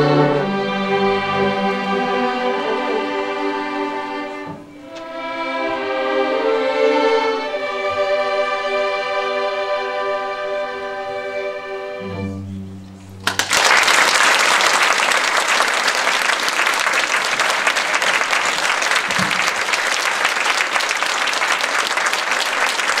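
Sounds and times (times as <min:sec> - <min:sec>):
orchestra low chord: 0:00.0 - 0:13.2
audience applauding: 0:13.2 - 0:23.0.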